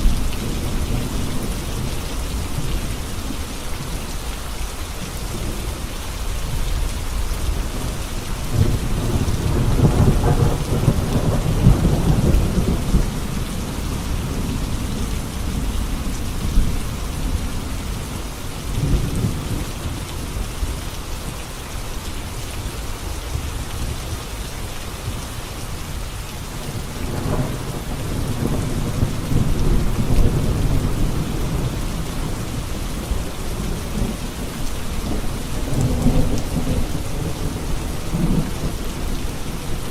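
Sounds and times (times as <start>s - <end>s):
heavy rain on road: 0.0s - 39.9s
low rolling thunder: 6.4s - 20.6s, 26.7s - 39.9s.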